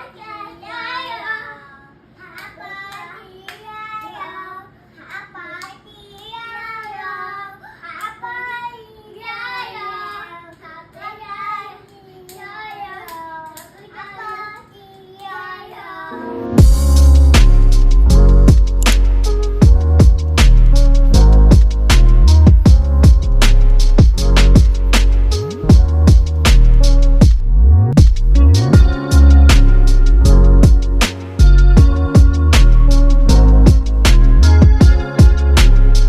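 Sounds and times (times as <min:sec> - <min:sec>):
child singing and babbling: 0:00.0 - 0:16.2
loud music: 0:16.1 - 0:36.0.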